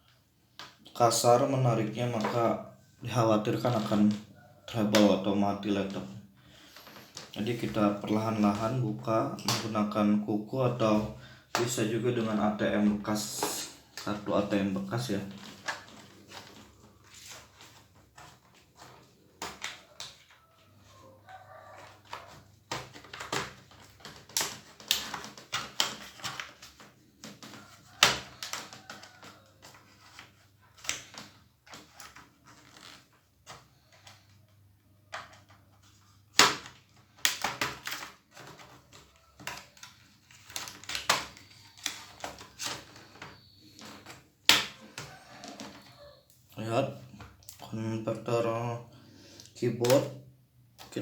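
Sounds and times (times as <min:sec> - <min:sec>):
plastic clips snapping: 0:22.1 - 0:34.2, 0:36.4 - 0:46.4.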